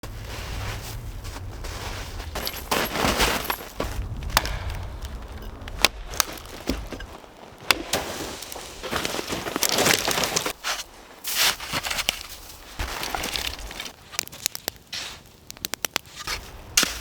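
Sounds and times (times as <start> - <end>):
low rumble: 0.0 - 7.4
rustling handling noise: 0.1 - 15.4
sharp cracks and knocks: 2.4 - 17.0.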